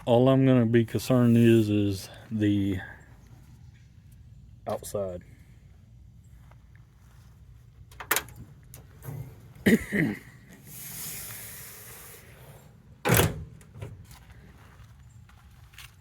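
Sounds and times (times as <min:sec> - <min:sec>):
hiss: 0:10.6 - 0:12.6.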